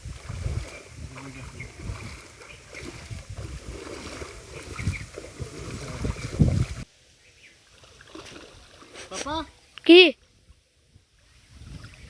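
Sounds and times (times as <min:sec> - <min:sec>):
loud splash: 0:00.0 - 0:06.8
river water sloshing and splashing: 0:00.0 - 0:06.9, 0:07.6 - 0:09.8.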